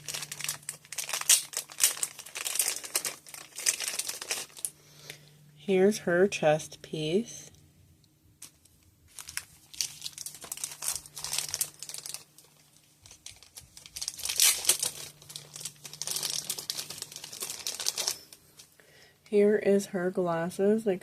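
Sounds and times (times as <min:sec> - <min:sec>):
plastic packaging crinkling: 0:00.0 - 0:05.2, 0:08.4 - 0:18.7.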